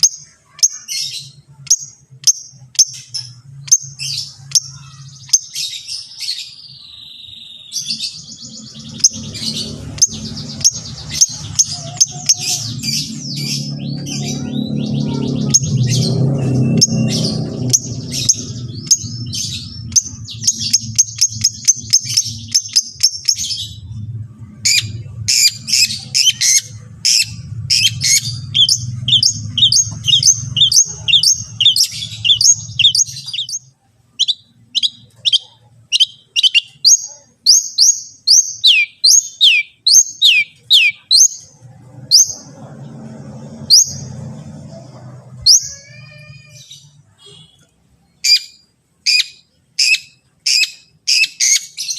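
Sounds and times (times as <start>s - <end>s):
bird singing chattering song: 0.0s - 51.9s
low hum: 7.9s - 35.1s.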